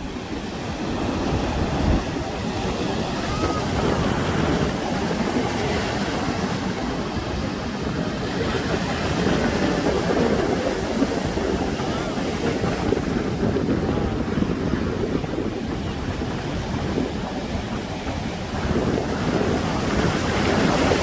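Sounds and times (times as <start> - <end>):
waves breaking on a beach: 0.0 - 21.0
wind buffeting microphone: 0.0 - 21.0.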